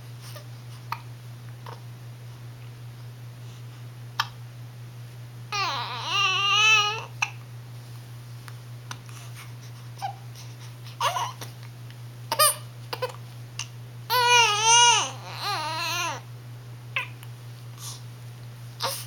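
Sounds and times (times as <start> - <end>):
baby whimpering and crying: 5.5 - 7.3, 11.0 - 11.5, 12.3 - 13.2, 14.1 - 16.2, 18.8 - 19.0.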